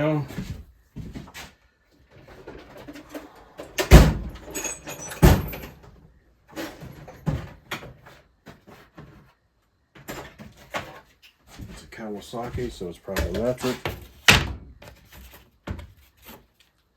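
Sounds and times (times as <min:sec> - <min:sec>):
hand tools clattering: 0:04.2 - 0:05.9.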